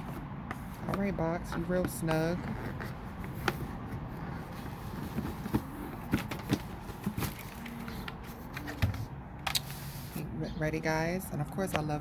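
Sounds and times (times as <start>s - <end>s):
hands rustling on cardboard: 0.0s - 8.8s.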